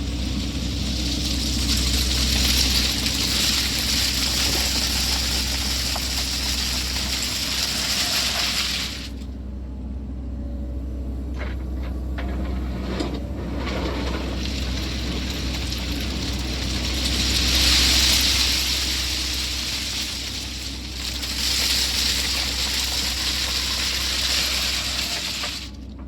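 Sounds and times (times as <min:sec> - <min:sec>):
gravel pouring off bucket: 0:00.0 - 0:09.2, 0:13.5 - 0:25.8
excavator diesel engine running: 0:00.0 - 0:26.0
stones clattering: 0:00.9 - 0:09.2, 0:13.8 - 0:25.8.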